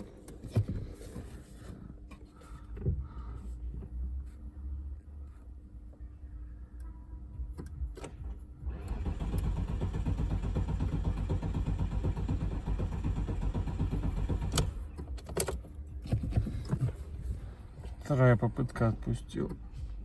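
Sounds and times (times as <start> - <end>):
diesel engine cranking on starter: 8.0 - 15.7.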